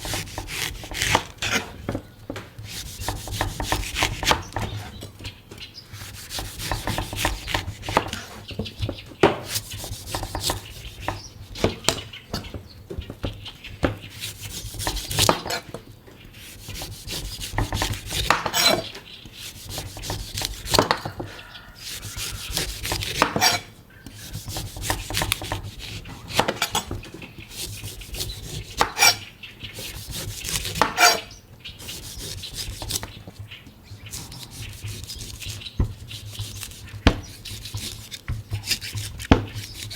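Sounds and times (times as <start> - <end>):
knife chopping coconut: 0.0 - 5.0, 6.0 - 8.5, 9.2 - 12.1, 13.8 - 29.2, 29.8 - 33.2, 34.1 - 39.9.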